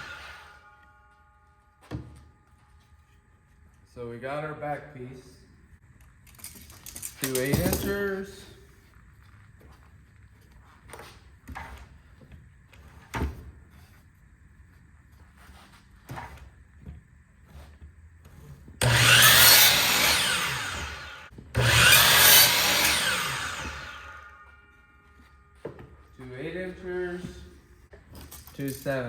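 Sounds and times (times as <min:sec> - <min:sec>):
electric saw cutting wood: 0:00.0 - 0:01.0, 0:18.8 - 0:27.4.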